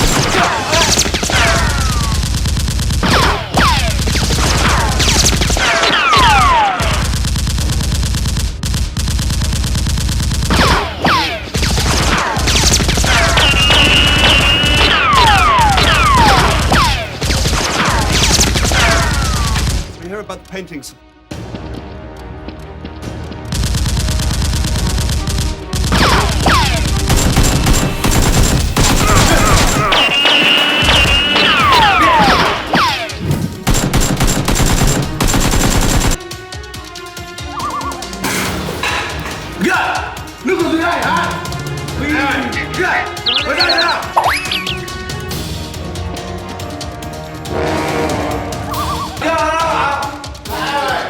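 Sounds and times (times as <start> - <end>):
rapid automatic gunfire: 0.0 - 5.6, 6.8 - 10.7, 11.5 - 19.8, 23.5 - 32.0, 33.6 - 36.2
background music: 10.4 - 51.0
falling whistles: 13.4 - 15.4, 29.9 - 31.9, 43.2 - 45.0
falling whistling tones: 43.2 - 44.9.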